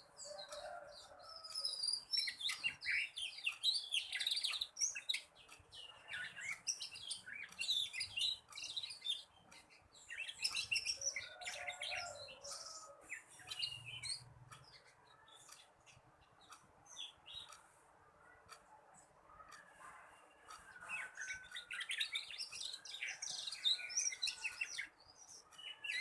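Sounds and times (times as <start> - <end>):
canary warbling chirps and trills: 0.0 - 26.0.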